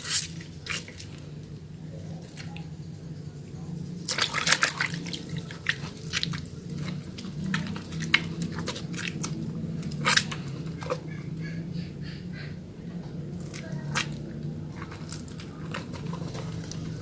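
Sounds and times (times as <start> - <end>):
steady low hum: 0.0 - 17.0
soap lathering in wet hands: 4.0 - 11.1.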